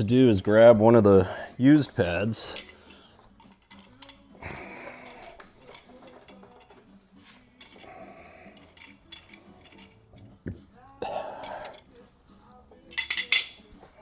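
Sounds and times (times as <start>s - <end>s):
brake parts clinking and scraping: 1.9s - 10.4s, 12.9s - 14.0s.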